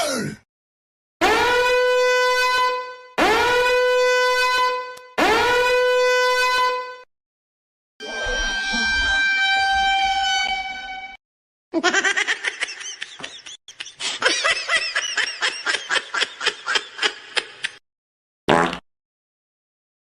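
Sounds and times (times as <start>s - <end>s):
comedy horn blare: 1.2s - 7.1s, 8.0s - 11.2s.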